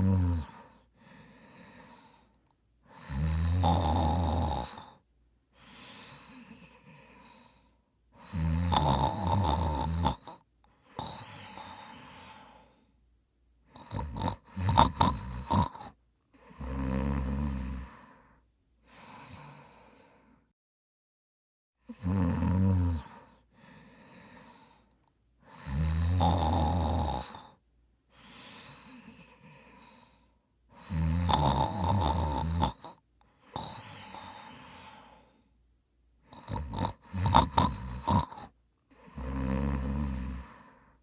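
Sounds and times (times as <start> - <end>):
person snoring: 0.0 - 2.3, 2.9 - 5.0, 5.6 - 12.8, 13.7 - 20.3, 21.8 - 35.5, 36.2 - 41.0
quiet breaths: 0.0 - 20.5, 22.9 - 41.0.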